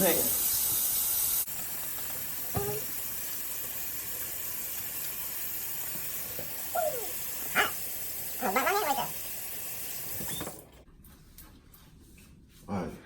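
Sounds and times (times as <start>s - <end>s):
wavering vocal cries: 6.7s - 7.8s.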